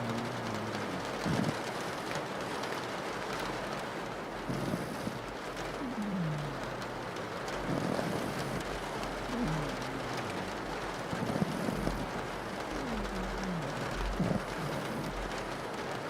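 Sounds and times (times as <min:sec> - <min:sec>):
dog snoring: 0:00.0 - 0:01.8, 0:04.5 - 0:05.2, 0:05.8 - 0:06.7, 0:07.4 - 0:15.6
rain pattering on a window: 0:00.0 - 0:16.0.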